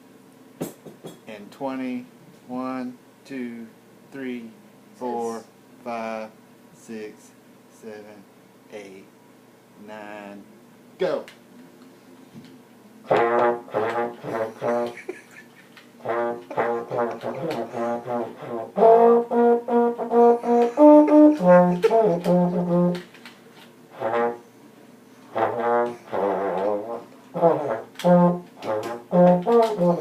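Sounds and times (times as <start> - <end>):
trombone short repeated notes: 13.1 - 14.9, 16.0 - 23.1, 24.0 - 24.4, 25.3 - 30.0.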